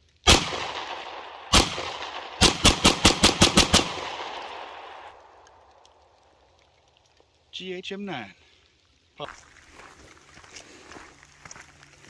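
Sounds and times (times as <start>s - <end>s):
gunshots: 0.2s - 5.4s
gunshot echo: 0.3s - 5.6s.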